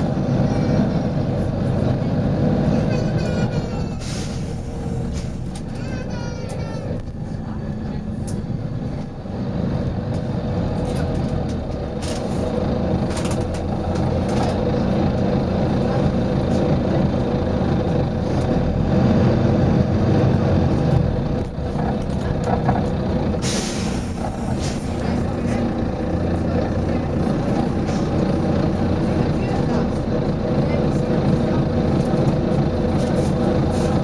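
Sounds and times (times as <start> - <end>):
bus diesel engine running: 0.0 - 34.0
compressed air hiss: 23.4 - 25.0.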